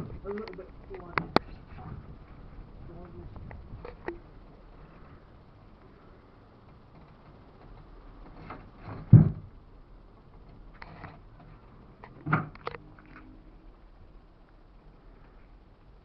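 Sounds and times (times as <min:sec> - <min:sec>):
faint rattle: 0:00.0 - 0:16.0
heavy thumps: 0:06.6 - 0:09.6
quick knocks and clatter: 0:06.9 - 0:09.5.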